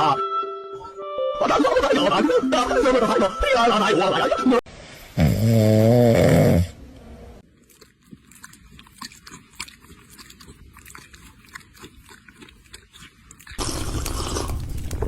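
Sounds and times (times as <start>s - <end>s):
cat chewing and crunching: 7.4s - 15.0s.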